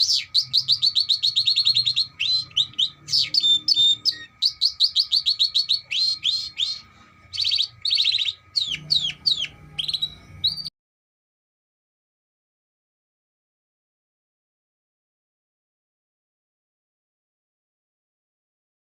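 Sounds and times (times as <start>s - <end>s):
canary singing: 0.0s - 10.7s.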